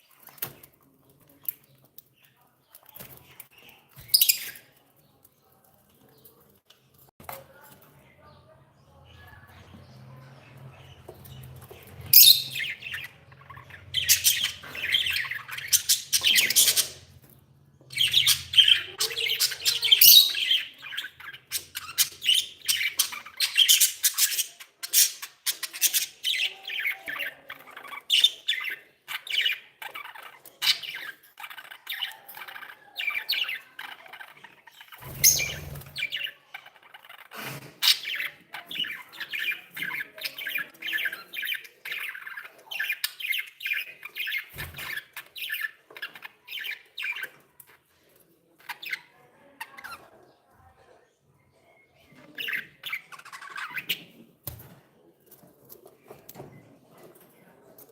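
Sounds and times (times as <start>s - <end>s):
budgerigars chattering: 10.6s - 17.2s, 17.9s - 47.4s.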